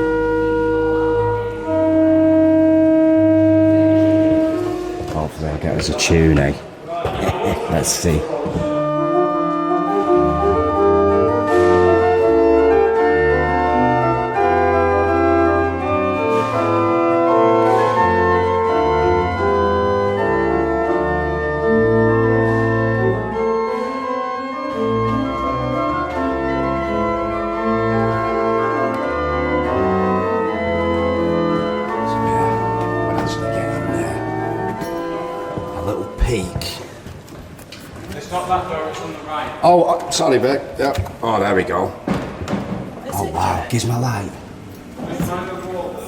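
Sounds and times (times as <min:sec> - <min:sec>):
pipe organ playing slow chords: 0:00.0 - 0:05.7, 0:08.2 - 0:36.8.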